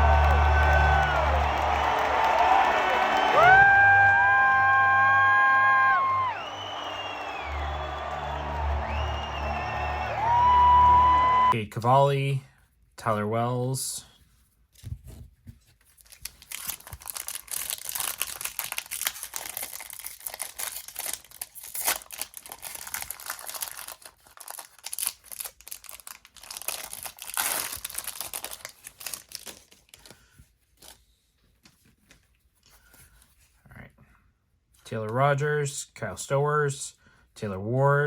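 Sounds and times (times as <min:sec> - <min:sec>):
wrapper tearing and crumpling: 0:15.9 - 0:30.1.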